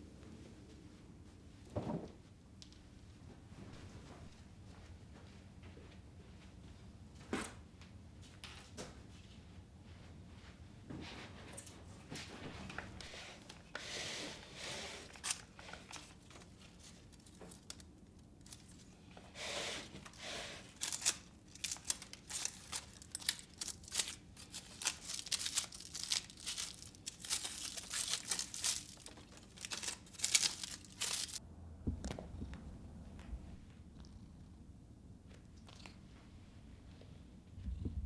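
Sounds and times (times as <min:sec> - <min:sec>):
crinkling and rustling: 0:14.9 - 0:33.6.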